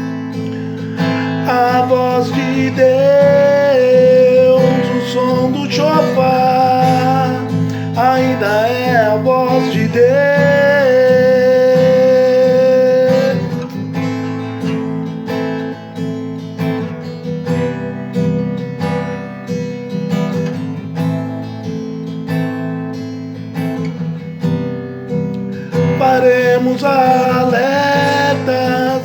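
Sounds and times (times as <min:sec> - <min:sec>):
person singing worship song: 0:00.0 - 0:13.8, 0:25.8 - 0:29.0
acoustic guitar strumming: 0:00.0 - 0:29.0.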